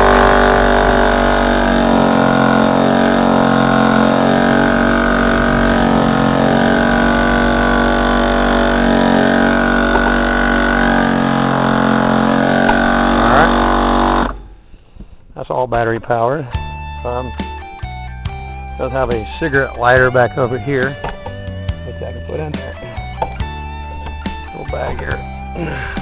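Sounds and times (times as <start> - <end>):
air compressor running: 0.0 - 14.9.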